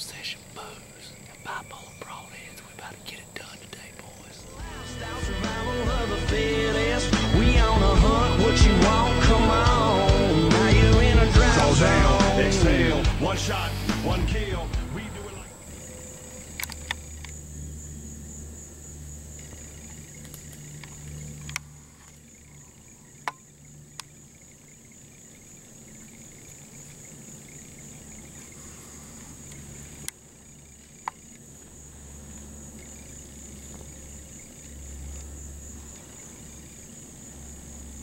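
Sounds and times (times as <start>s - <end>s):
insects chorus: 0.0s - 38.0s
low rumble: 4.6s - 22.8s.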